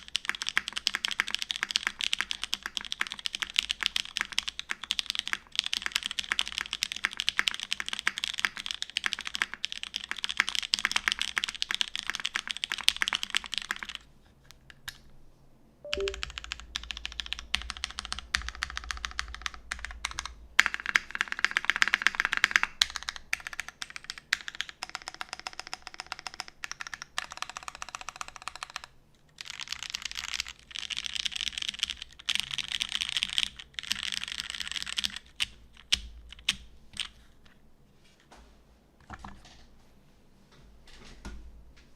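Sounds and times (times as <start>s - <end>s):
mechanical keyboard typing: 0.0s - 14.0s, 15.9s - 37.2s.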